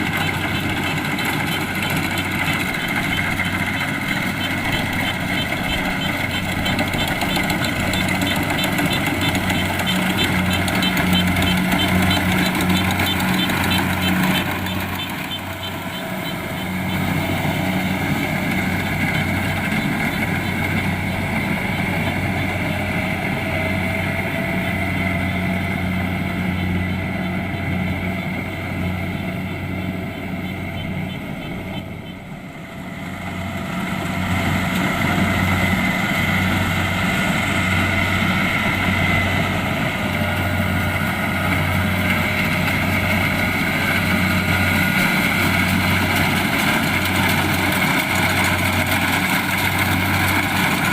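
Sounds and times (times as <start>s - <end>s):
combine harvester engine hum: 0.0s - 50.9s.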